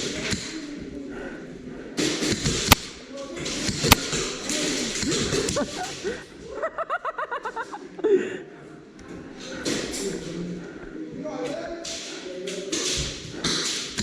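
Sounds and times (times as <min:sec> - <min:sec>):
sharp loud cracks: 0:02.6 - 0:03.0.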